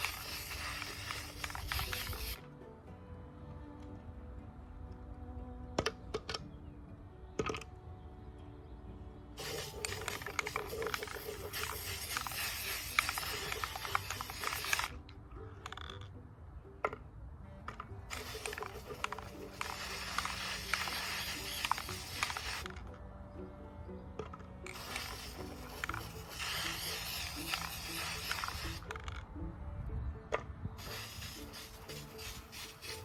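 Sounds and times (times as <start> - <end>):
aerosol can spraying: 0.0 - 2.4, 9.4 - 15.0, 18.1 - 22.8, 24.7 - 29.1, 30.8 - 33.0
soft background music: 0.0 - 33.0.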